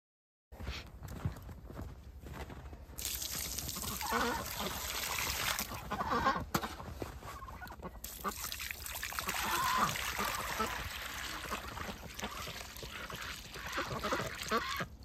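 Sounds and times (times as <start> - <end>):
waterfowl honking: 3.8 - 5.0, 5.7 - 8.5, 9.2 - 15.0.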